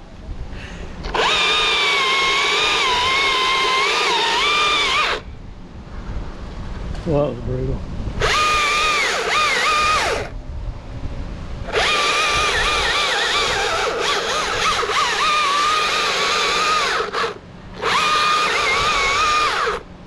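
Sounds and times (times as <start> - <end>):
chainsaw cutting wood: 1.0 - 5.2, 8.2 - 10.3, 11.7 - 19.9.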